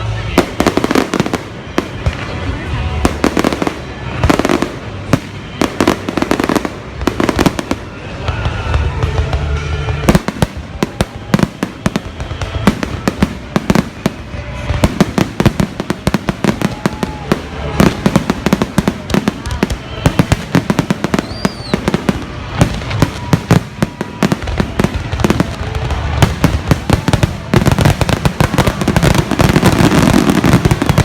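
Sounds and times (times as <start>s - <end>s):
fireworks bangs and crackles: 0.0s - 31.0s.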